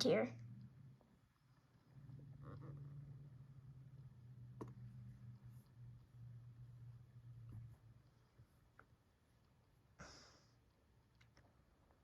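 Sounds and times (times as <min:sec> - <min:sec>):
faint low hum: 0:00.0 - 0:12.0.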